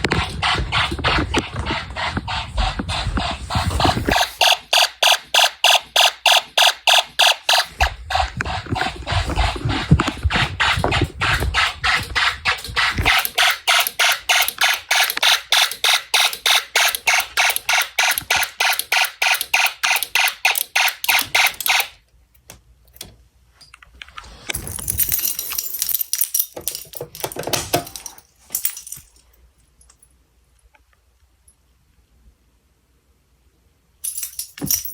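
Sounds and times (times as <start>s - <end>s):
clicks and rustling of circuit: 9.8s - 29.1s.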